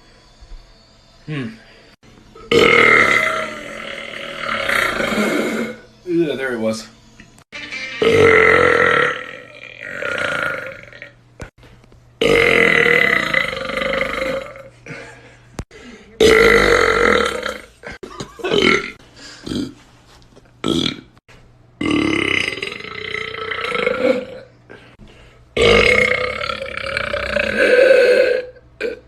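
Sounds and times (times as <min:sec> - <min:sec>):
person burping loudly: 0:02.4 - 0:05.8, 0:08.0 - 0:11.2, 0:12.2 - 0:15.0, 0:16.2 - 0:19.8, 0:20.6 - 0:21.2, 0:21.8 - 0:24.5, 0:25.6 - 0:29.0.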